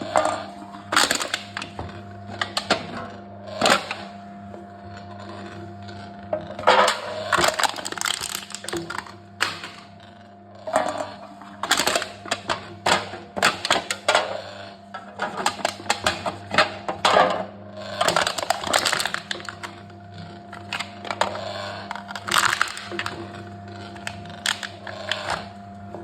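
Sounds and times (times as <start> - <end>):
cans crushed in a machine: 0.0 - 3.0, 3.6 - 4.1, 6.4 - 10.0, 10.8 - 14.4, 15.0 - 26.0
steady low hum: 0.0 - 26.0.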